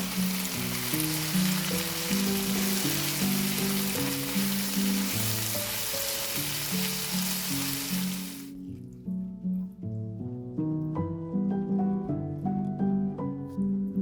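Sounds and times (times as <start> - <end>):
food frying in oil: 0.0 - 8.5
background music melody: 0.0 - 14.0.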